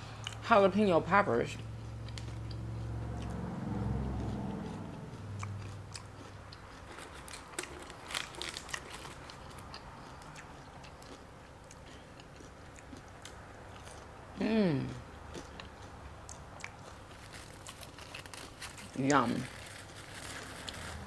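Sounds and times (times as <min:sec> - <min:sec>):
chewing and crunching food: 0:00.0 - 0:00.8, 0:01.4 - 0:21.0
person humming: 0:14.4 - 0:15.0.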